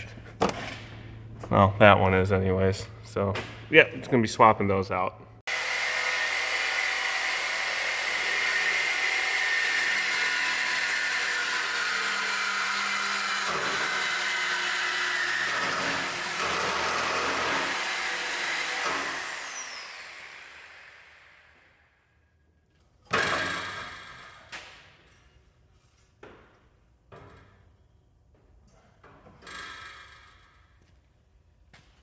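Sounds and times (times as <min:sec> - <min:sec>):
power tool high whine: 0:05.5 - 0:21.7.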